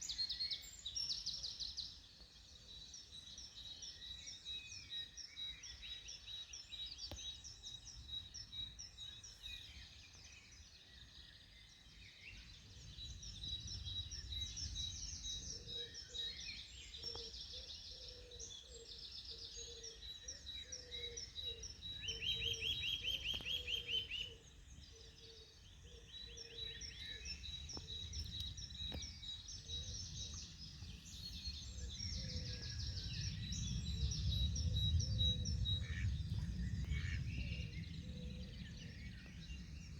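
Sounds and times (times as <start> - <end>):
birds singing and chirping: 0.0 - 39.9
low repeated bird call: 13.8 - 39.7.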